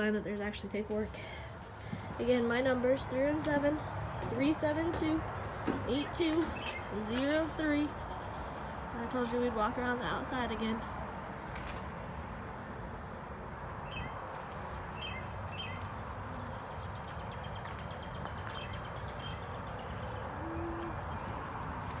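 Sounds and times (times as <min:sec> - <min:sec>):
birds chirping: 0:01.8 - 0:10.9, 0:13.8 - 0:22.0.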